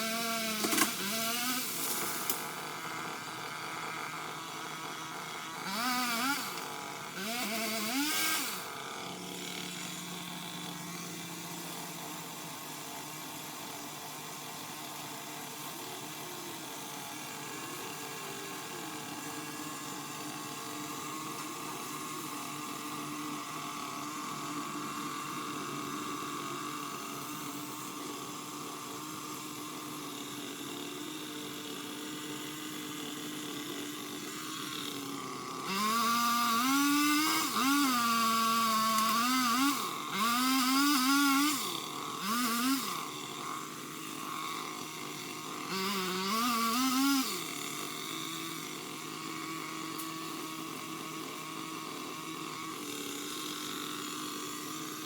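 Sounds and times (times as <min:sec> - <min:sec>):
pole saw engine revving: 0:00.0 - 0:12.4, 0:18.6 - 0:55.0.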